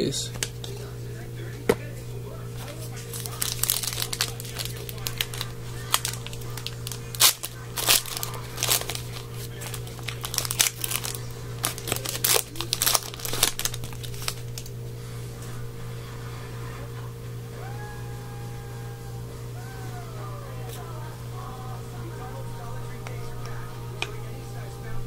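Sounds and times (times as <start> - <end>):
steady low hum: 0.0 - 25.0
foil wrapper crinkling and tearing: 2.6 - 14.8.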